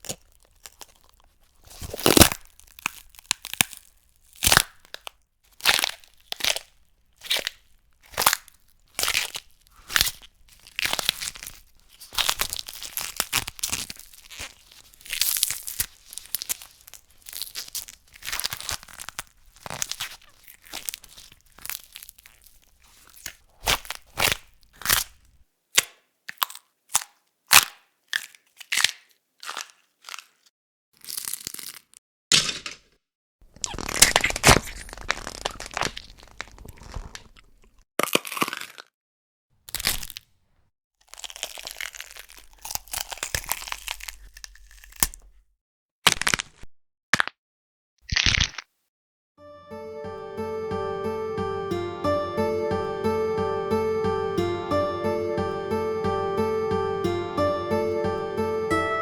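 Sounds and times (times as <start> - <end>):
bones cracking and crunching: 0.0 - 25.2, 41.0 - 45.3, 46.1 - 46.6, 48.1 - 48.7.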